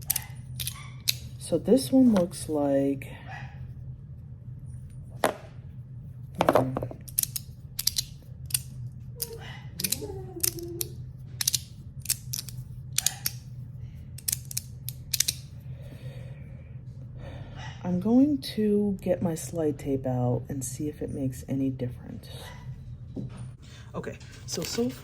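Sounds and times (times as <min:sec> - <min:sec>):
magnetic fidget slider clicking: 0:00.0 - 0:01.3, 0:07.0 - 0:13.4, 0:14.2 - 0:15.4.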